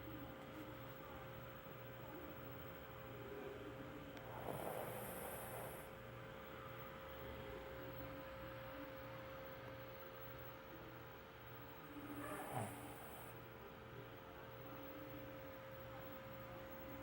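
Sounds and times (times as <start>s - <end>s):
person snoring: 4.3s - 5.9s, 12.2s - 13.3s.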